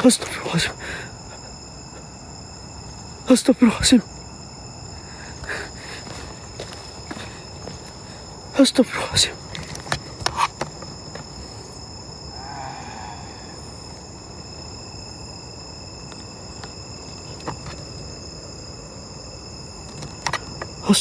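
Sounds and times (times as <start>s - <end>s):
low background hiss: 0.0s - 10.2s
insects chirring: 0.0s - 21.0s.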